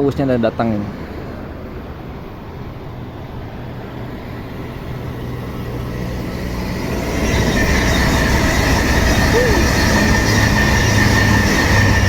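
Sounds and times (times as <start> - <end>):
train approaching rumble: 0.0 - 12.0.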